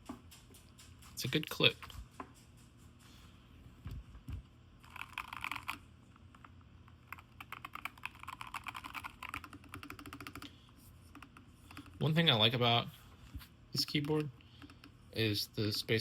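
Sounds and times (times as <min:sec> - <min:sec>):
keyboard keys clicking: 0:04.9 - 0:05.8, 0:07.1 - 0:10.5.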